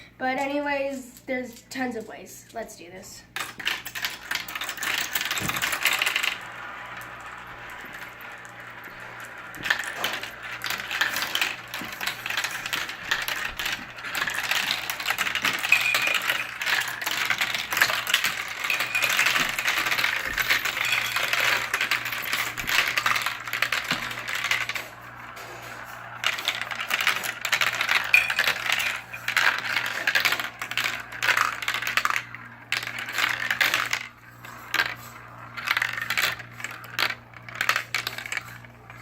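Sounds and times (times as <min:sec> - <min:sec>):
marbles clattering down a plastic track: 0:03.4 - 0:39.0.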